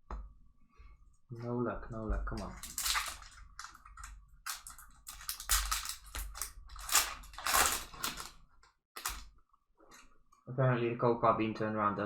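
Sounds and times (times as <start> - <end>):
foil wrapper crinkling and tearing: 2.4 - 8.4, 9.0 - 9.3.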